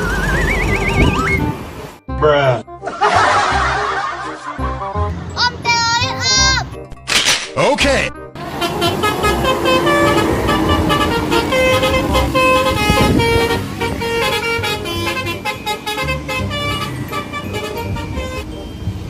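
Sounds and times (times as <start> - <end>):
vehicle low rumble: 8.4 - 15.5
bus air horn melody: 8.4 - 18.6.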